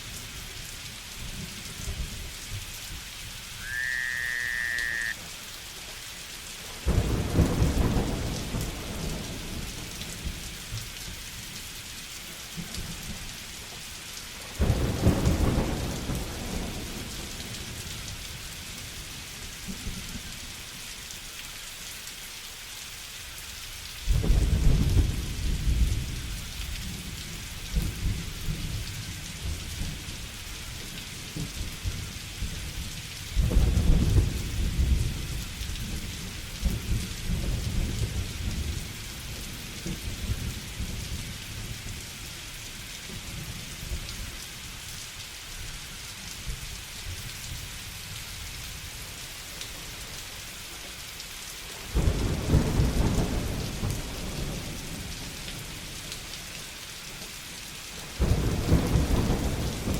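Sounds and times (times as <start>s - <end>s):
steady rain falling: 0.0s - 59.9s
thunder rumbling: 6.8s - 10.4s, 14.6s - 17.6s.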